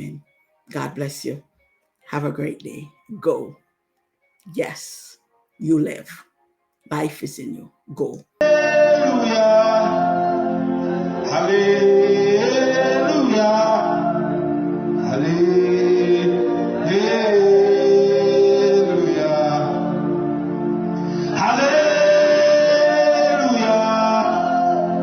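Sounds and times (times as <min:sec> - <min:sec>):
man singing gospel: 0:06.9 - 0:14.4, 0:15.0 - 0:25.0.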